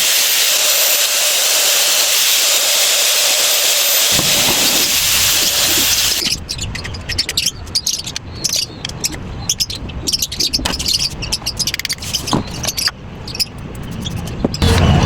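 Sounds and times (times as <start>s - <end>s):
small clicks and scrapes: 4.2s - 14.9s.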